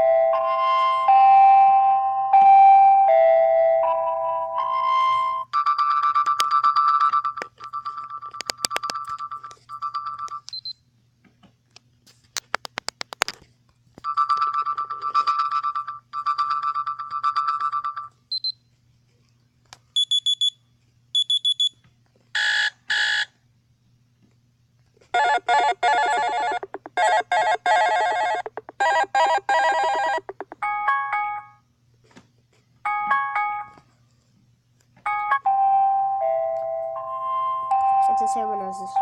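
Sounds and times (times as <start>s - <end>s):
phone ringtones: 0.0s - 10.4s, 14.1s - 18.1s, 25.2s - 31.5s, 35.1s - 39.0s.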